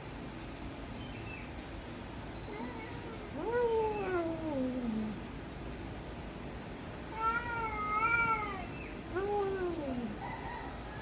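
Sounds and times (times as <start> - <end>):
cat meowing: 2.5 - 5.1, 7.1 - 8.8.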